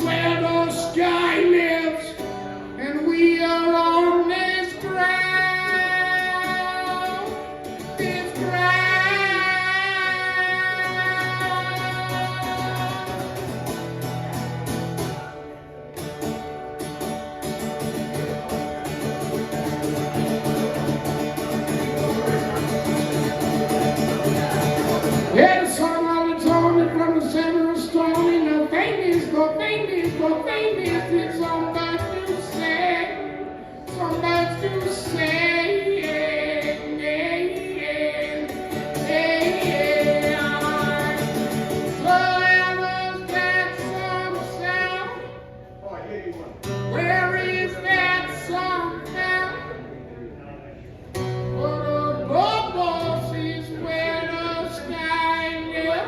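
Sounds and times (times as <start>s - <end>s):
person singing long gliding notes: 0.0s - 2.2s, 2.8s - 13.4s, 25.2s - 45.4s
acoustic guitar strumming: 0.0s - 50.0s, 50.8s - 56.0s.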